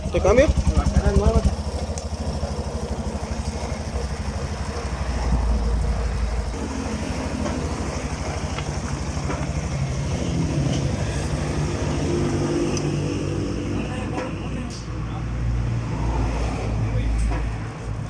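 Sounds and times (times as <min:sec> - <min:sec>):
motorcycle engine running: 0:00.0 - 0:14.0
faint clicks: 0:01.8 - 0:02.1.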